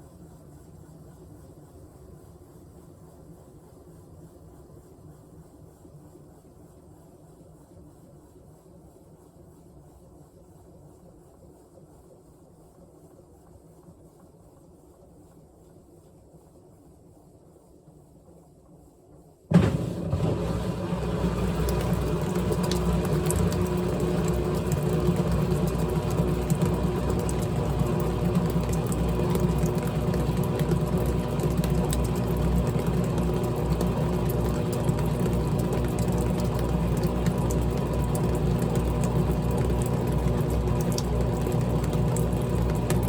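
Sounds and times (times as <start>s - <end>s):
washing machine running: 19.5s - 43.0s.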